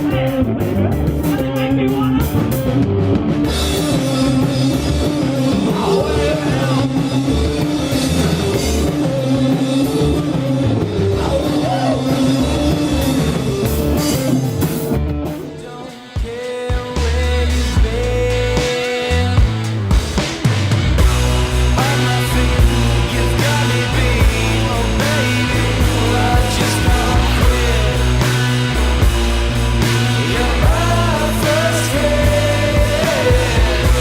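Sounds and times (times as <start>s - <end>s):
drum kit: 0.0s - 34.0s
guitar: 0.0s - 34.0s
rock music: 0.0s - 34.0s
person singing: 3.6s - 13.4s, 15.4s - 19.8s, 21.0s - 29.0s, 29.8s - 34.0s.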